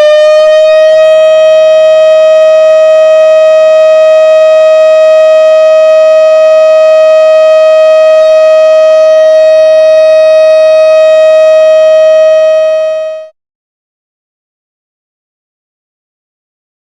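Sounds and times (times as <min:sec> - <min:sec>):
siren steady tone: 0:00.0 - 0:13.3.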